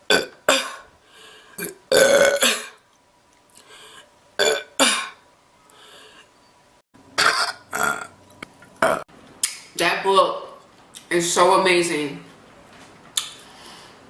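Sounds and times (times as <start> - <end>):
person burping loudly: 0.1 - 0.8, 1.6 - 2.8, 4.4 - 5.2, 7.2 - 8.2, 8.8 - 9.1.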